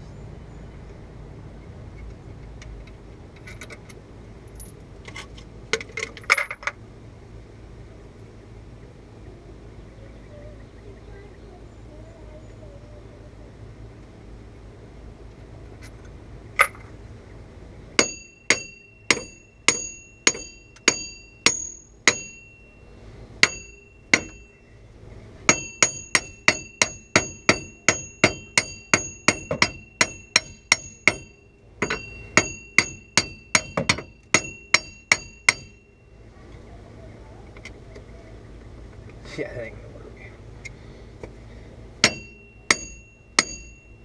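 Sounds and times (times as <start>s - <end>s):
hammer ringing on metal: 18.0s - 22.6s, 23.4s - 24.6s, 25.5s - 35.9s, 42.0s - 44.0s.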